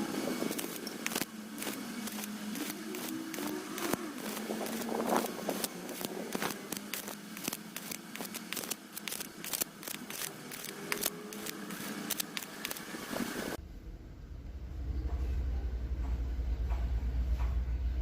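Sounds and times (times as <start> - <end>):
welding arc crackling: 0.0 - 13.6
low hum: 0.0 - 18.0.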